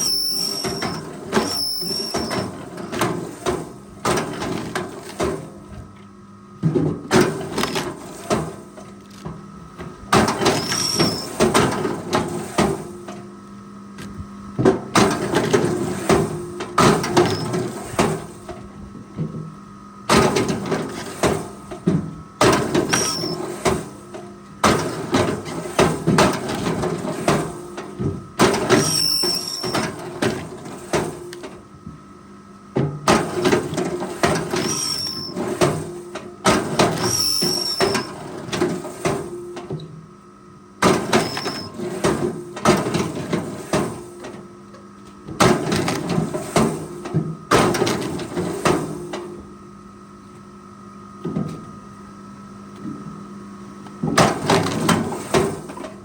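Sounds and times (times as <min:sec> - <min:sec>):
short high squeaks: 0:00.0 - 0:02.5, 0:10.6 - 0:11.4, 0:22.9 - 0:23.4, 0:28.8 - 0:29.8, 0:34.6 - 0:35.4, 0:37.1 - 0:38.1, 0:41.2 - 0:41.7.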